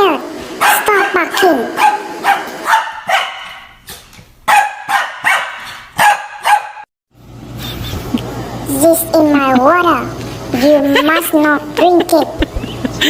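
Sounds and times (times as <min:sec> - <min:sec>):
dog barking sharply: 0:00.6 - 0:01.2, 0:01.8 - 0:03.8, 0:04.5 - 0:06.9.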